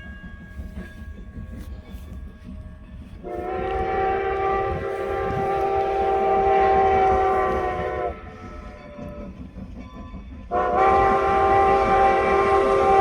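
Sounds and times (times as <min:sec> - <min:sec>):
train rumbling on rails: 0:00.0 - 0:13.0
locomotive whistle blasts: 0:03.3 - 0:09.0, 0:10.5 - 0:13.0.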